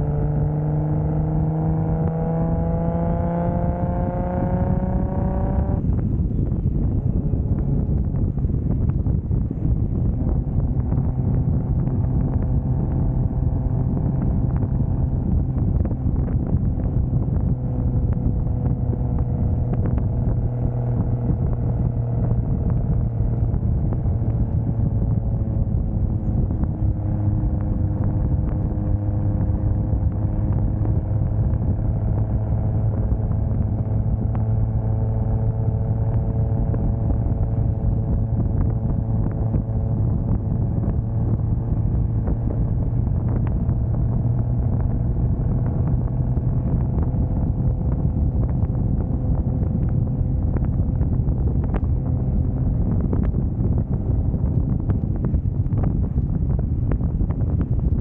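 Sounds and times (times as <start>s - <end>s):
car engine cruising drone: 0.0s - 58.0s
road and tyre noise: 0.0s - 58.0s.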